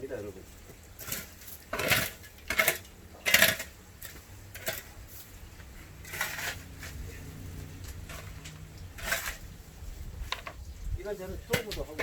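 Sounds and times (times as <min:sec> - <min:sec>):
hard objects clattering together: 0:01.0 - 0:04.9.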